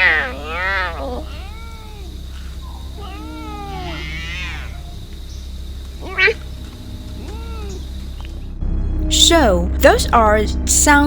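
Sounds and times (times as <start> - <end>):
leopard meow-like calls: 0.0 - 8.2.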